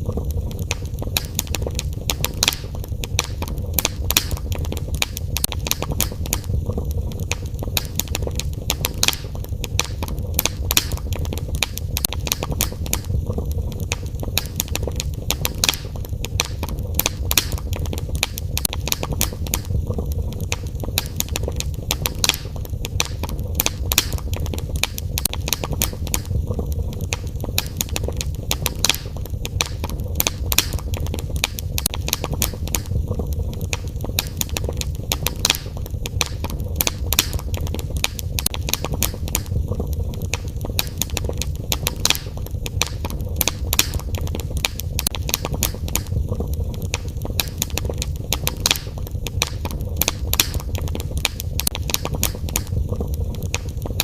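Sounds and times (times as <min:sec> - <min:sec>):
low rumble: 0:00.0 - 0:03.8, 0:04.4 - 0:08.8
wood fire crackling: 0:00.0 - 0:54.0.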